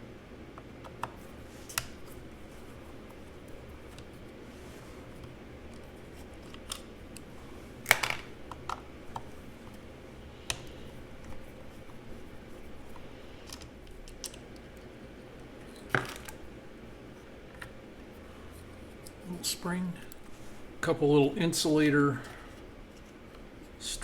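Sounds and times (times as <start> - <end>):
small clicks and clatter: 13.4 - 14.9.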